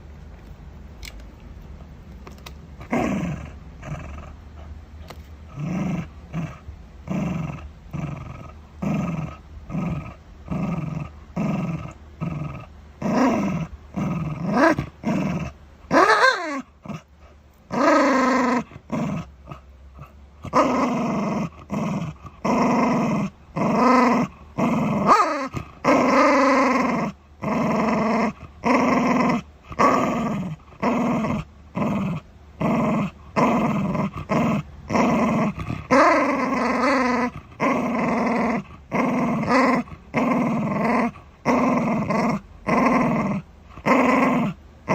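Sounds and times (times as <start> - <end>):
dog growling: 2.8 - 17.1, 17.7 - 44.9
dog wavering cry: 15.9 - 16.7, 22.6 - 27.1.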